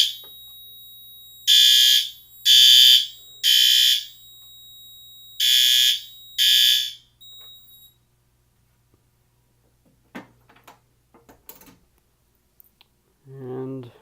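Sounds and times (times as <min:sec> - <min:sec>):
fire alarm horn blasts: 0:00.0 - 0:08.0
faint steady high tone: 0:00.0 - 0:08.2.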